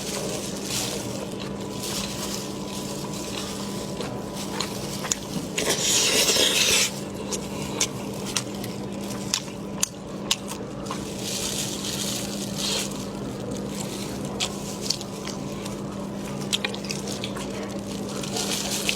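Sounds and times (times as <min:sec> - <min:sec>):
steady low hum: 0:00.0 - 0:18.9.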